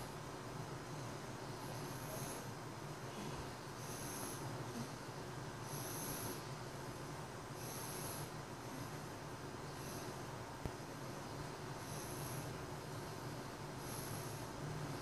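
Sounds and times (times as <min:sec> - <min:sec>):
baby snoring: 0:01.7 - 0:02.5, 0:05.6 - 0:06.5, 0:07.6 - 0:08.9.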